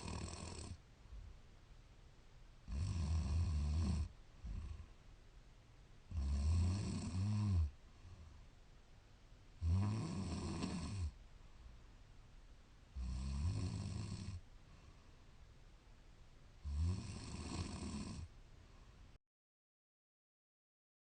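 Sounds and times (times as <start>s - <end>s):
woman snoring: 0.0s - 0.8s, 2.7s - 4.9s, 6.1s - 7.8s, 9.6s - 11.2s, 13.0s - 14.4s, 16.6s - 18.3s.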